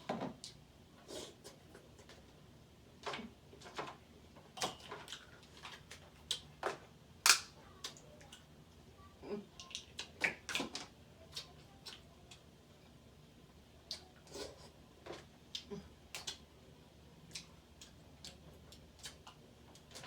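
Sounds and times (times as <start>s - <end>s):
crab shells cracking: 7.2s - 7.5s.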